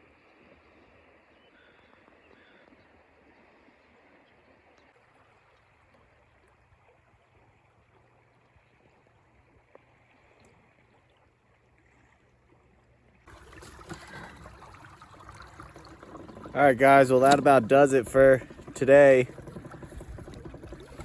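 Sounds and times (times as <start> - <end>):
flowing river water: 0.0 - 21.0
rushing water: 13.3 - 21.0.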